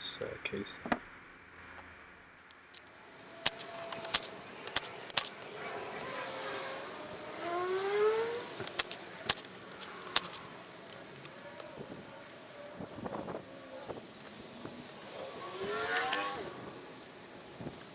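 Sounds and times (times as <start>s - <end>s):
metal taps and clinks: 3.3s - 6.7s, 8.3s - 11.3s.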